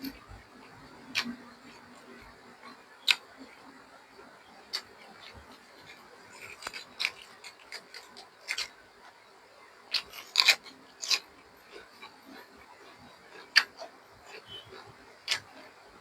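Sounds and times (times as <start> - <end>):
crunchy chewing: 0.0 - 16.0.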